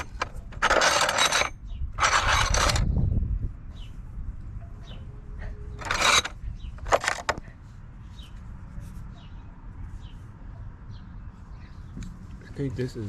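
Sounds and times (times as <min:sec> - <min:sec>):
hand tools clattering in toolbox: 0:00.0 - 0:02.8.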